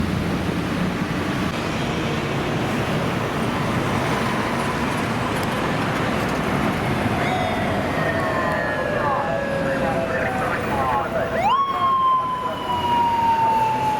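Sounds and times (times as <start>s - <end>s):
road traffic passing: 0.0s - 13.9s
motorcycle siren: 7.1s - 13.9s.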